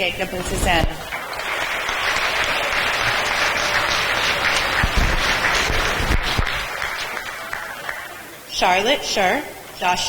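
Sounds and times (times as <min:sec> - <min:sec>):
children clapping: 0:01.0 - 0:08.3.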